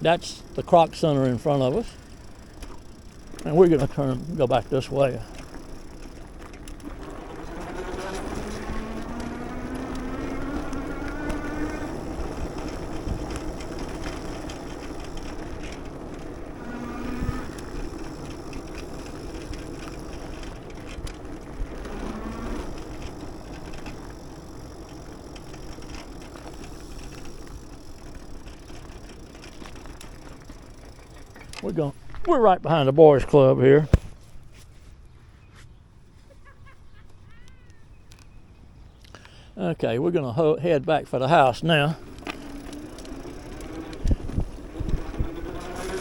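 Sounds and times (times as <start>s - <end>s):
bicycle rolling noise: 0.0s - 46.0s
wind: 0.0s - 46.0s
rising motor tone: 1.8s - 31.6s.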